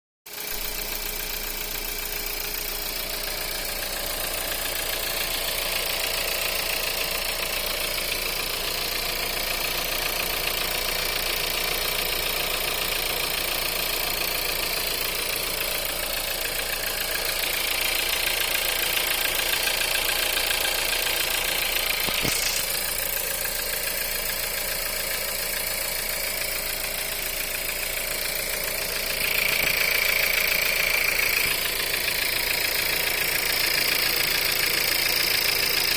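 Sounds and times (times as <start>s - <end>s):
car engine idling with knock: 0.3s - 35.9s
sharp click: 22.0s - 22.7s.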